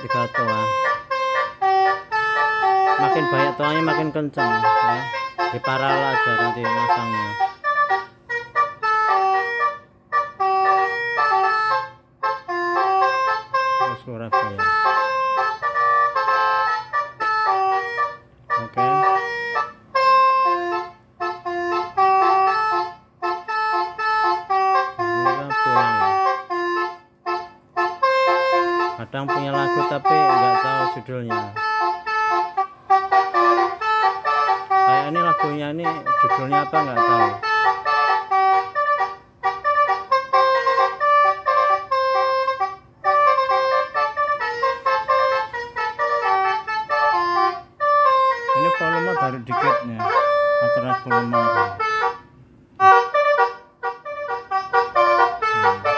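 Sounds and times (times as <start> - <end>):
electronic horn playing melody: 0.0 - 55.9.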